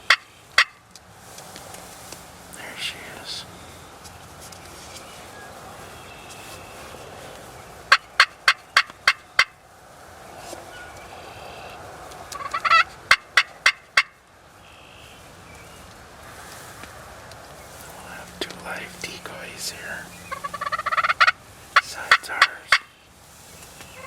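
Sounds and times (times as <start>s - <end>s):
turkey yelps: 0.0s - 0.8s, 7.9s - 9.6s, 12.4s - 14.2s, 20.3s - 23.0s
steady outdoor hiss: 0.0s - 24.0s.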